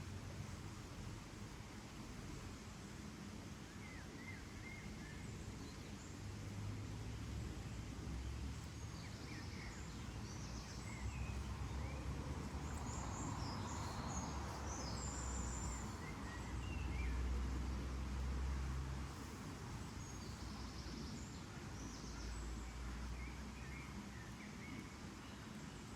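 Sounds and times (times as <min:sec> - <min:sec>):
low outdoor rumble: 0:06.0 - 0:24.1
small birds chirping: 0:07.4 - 0:25.9.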